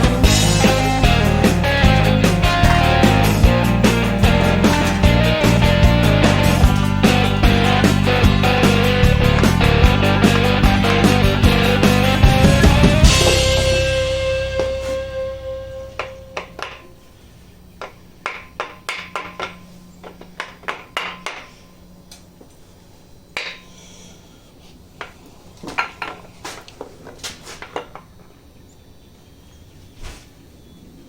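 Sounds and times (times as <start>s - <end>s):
metal engine parts clinking: 0.0s - 14.0s, 15.3s - 22.6s, 23.3s - 23.8s.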